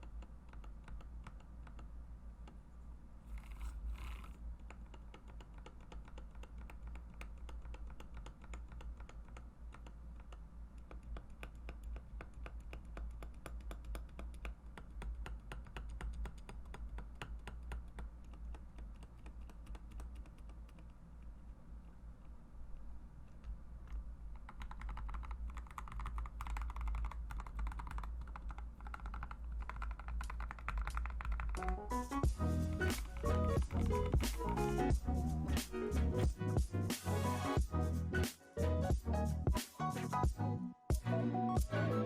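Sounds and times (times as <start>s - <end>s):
mechanical keyboard typing: 0.0s - 1.9s, 3.3s - 21.0s, 23.9s - 35.5s
scratchy rasps: 3.3s - 9.9s.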